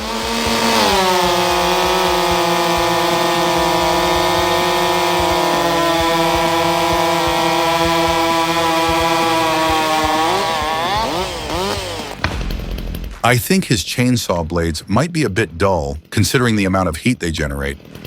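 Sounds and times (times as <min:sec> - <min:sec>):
chainsaw cutting: 0:00.0 - 0:14.2, 0:17.8 - 0:18.0.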